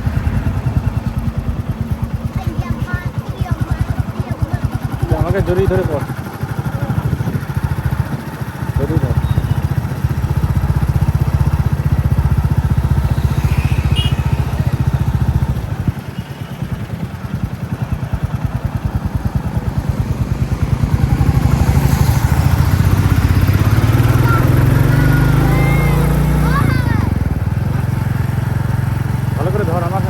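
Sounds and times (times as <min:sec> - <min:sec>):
single-cylinder motorcycle engine thumping: 0:00.0 - 0:16.1.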